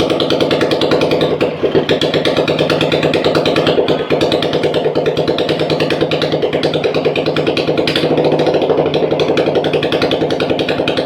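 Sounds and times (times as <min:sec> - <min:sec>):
fast light engine ticking: 0:00.0 - 0:11.0
motorcycle engine idling: 0:00.0 - 0:11.0.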